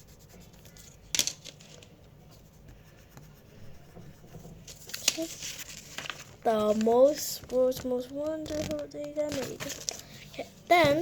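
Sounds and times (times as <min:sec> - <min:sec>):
pencil scratching on paper: 0:00.0 - 0:01.1, 0:02.1 - 0:05.7.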